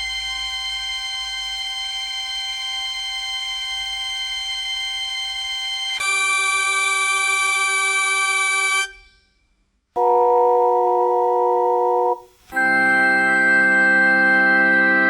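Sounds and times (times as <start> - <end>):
pipe organ chords: 10.0 - 15.0.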